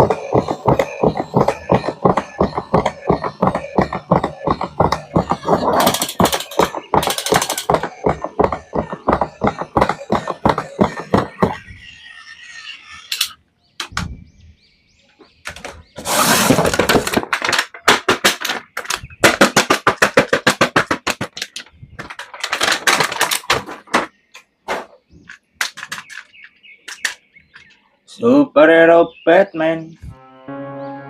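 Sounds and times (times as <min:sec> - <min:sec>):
clicks and knocks of plastic toys: 0:00.0 - 0:11.6, 0:13.1 - 0:14.1, 0:15.4 - 0:27.8
packaging rustling: 0:21.4 - 0:24.0.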